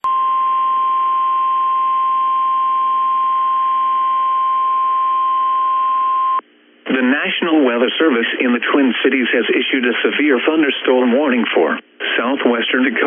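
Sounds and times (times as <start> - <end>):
steady warning alarm beep: 0.0 - 6.4
faint radio hiss: 6.4 - 13.0.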